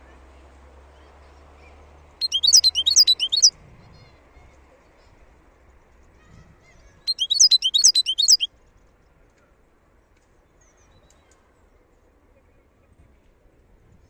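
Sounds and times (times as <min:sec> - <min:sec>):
goldfinch twittering: 0:02.2 - 0:03.5, 0:07.1 - 0:08.5.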